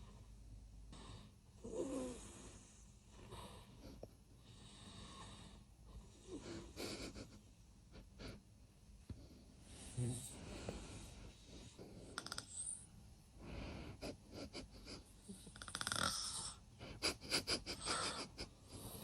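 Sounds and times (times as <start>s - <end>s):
man snoring: 15.6s - 16.6s.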